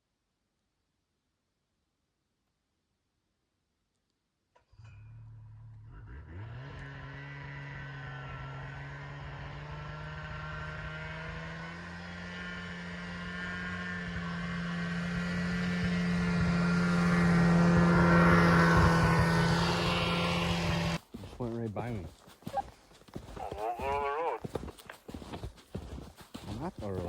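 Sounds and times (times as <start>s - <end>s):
snowmobile engine running: 5.6s - 27.0s.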